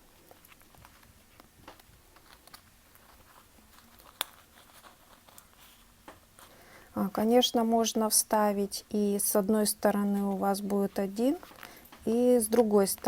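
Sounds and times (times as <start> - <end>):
plastic sleeves clicking and rustling: 0.0 - 6.6, 10.9 - 13.0.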